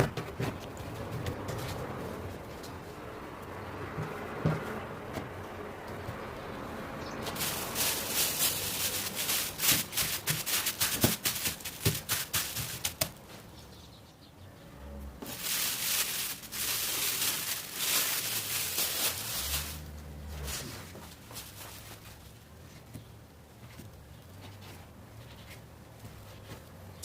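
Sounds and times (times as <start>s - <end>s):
rustling brushing noise: 7.2s - 13.5s, 15.2s - 23.0s.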